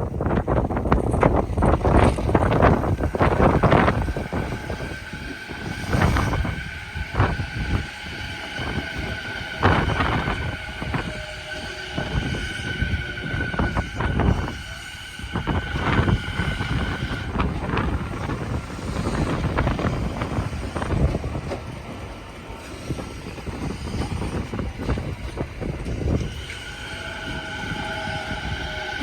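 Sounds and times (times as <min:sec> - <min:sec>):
train running over bridge: 0:00.0 - 0:29.0
wind buffeting microphone: 0:00.0 - 0:29.0
steady high tone: 0:01.6 - 0:21.1, 0:26.1 - 0:29.0.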